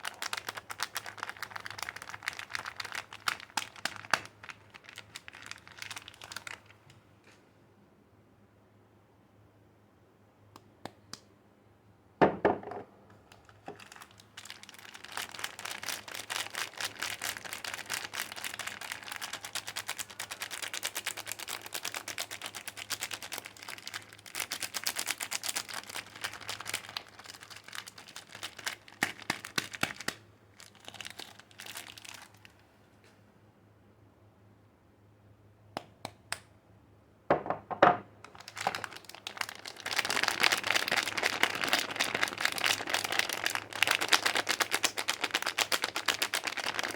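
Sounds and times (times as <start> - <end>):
soap wrapping crinkling and tearing: 0.0 - 7.0, 13.3 - 32.6, 38.3 - 46.9.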